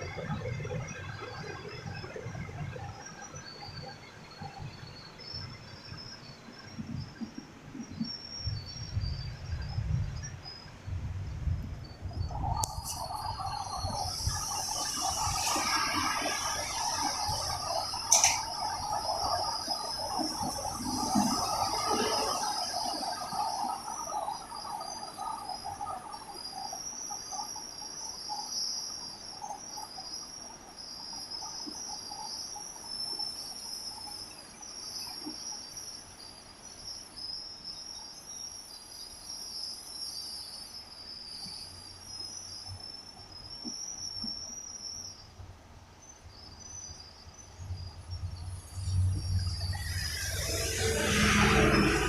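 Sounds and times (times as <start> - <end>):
faint rain hiss: 0.0 - 52.0
insect chorus trilling: 0.0 - 52.0.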